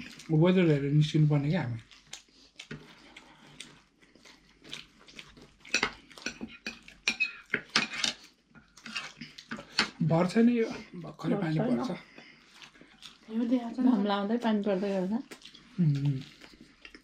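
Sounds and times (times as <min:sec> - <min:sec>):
cutlery clinking on a plate: 0:05.7 - 0:08.2.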